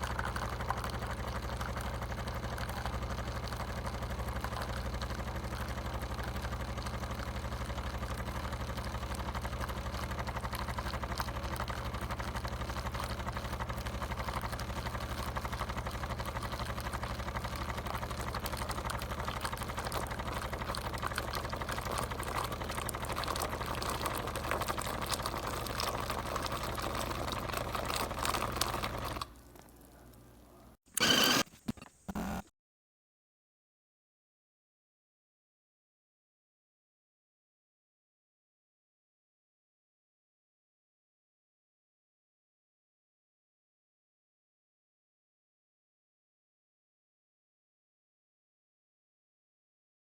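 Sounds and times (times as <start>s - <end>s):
espresso machine humming: 0.0s - 32.5s.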